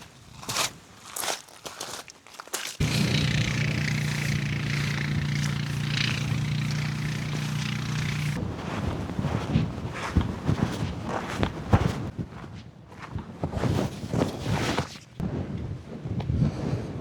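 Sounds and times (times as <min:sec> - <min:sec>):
engine running steadily: 0:02.8 - 0:08.4.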